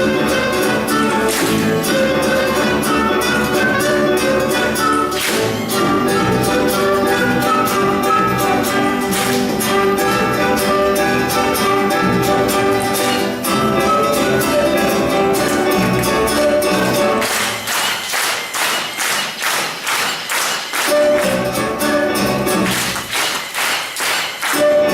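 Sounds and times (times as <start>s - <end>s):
orchestral bowed strings: 0.0s - 17.8s
sharp percussive beats: 0.9s - 3.7s, 5.1s - 6.7s, 8.6s - 10.3s, 12.5s - 13.7s, 15.4s - 24.9s.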